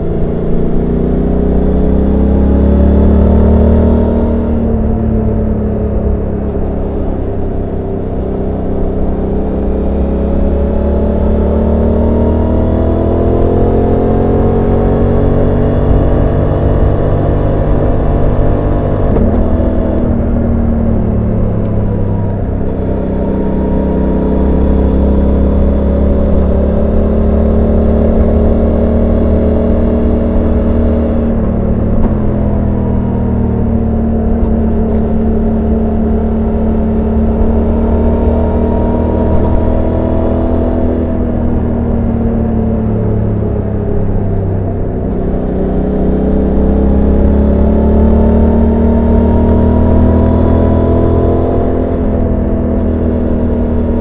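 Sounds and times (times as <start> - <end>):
motorcycle engine and exhaust: 0.0 - 54.0.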